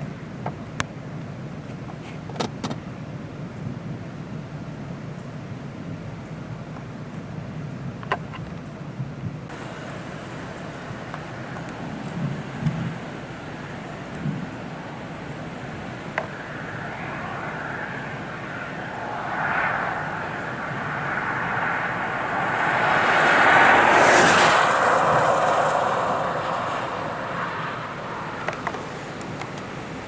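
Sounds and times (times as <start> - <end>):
vehicle passing by: 9.5 - 30.0.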